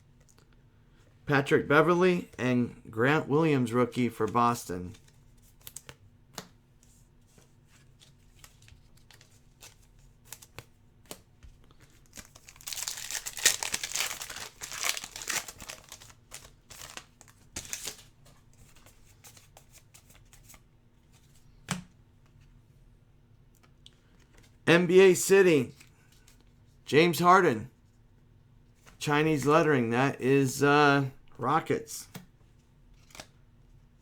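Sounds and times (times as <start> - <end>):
wrapper crinkling and tearing: 12.0 - 18.1.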